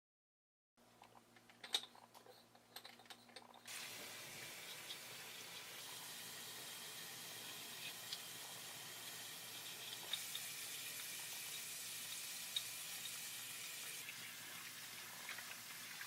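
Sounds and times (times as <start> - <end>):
small parts clicking and tapping: 1.0 - 3.7, 9.6 - 10.5, 11.5 - 13.2
tap running water: 3.7 - 16.0.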